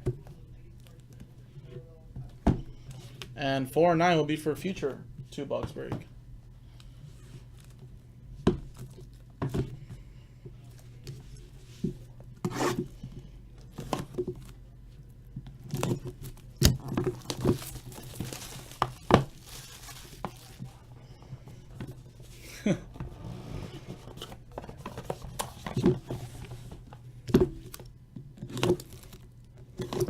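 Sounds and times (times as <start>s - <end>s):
plastic wrap tearing and crinkling: 15.7s - 20.9s, 27.7s - 30.0s
rustling: 15.7s - 27.0s.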